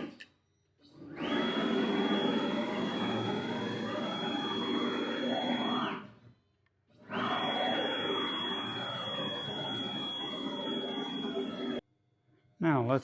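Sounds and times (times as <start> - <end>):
electric motor whine: 1.1 - 6.1, 7.1 - 11.8.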